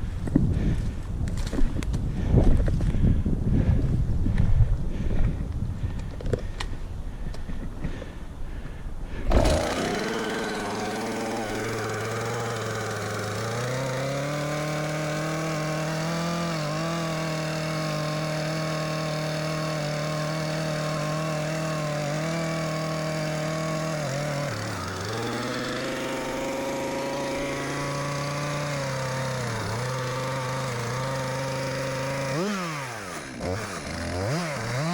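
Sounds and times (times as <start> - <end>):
chainsaw running: 9.2 - 34.9.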